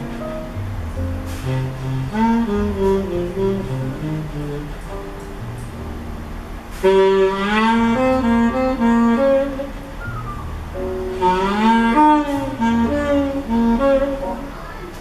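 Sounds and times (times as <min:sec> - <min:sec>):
low bass line: 0:00.0 - 0:07.0, 0:07.6 - 0:14.2
jazz melody over loudspeakers: 0:00.0 - 0:15.0.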